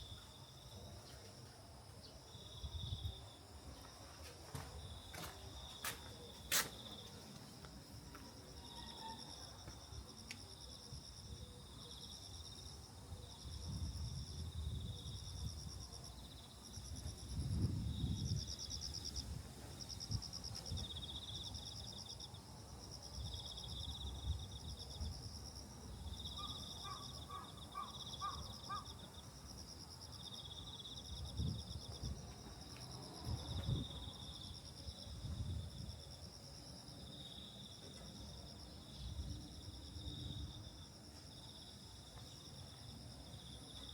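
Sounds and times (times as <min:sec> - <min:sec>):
insects chirping trills: 0:00.0 - 0:43.9
wind rumbling on microphone: 0:13.6 - 0:15.8, 0:17.0 - 0:21.0, 0:31.1 - 0:32.5, 0:33.2 - 0:34.2, 0:35.0 - 0:36.0.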